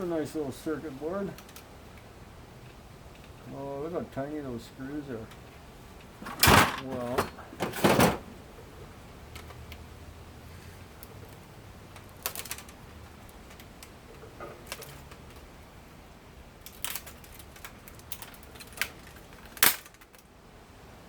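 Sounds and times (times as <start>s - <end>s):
hand tools and parts clattering: 5.3s - 8.3s, 10.6s - 15.6s, 16.6s - 20.3s.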